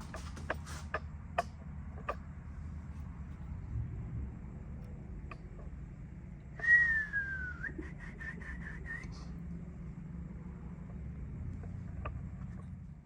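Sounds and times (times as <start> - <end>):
low steady hum: 0.0 - 13.0
high whistle: 6.6 - 9.3.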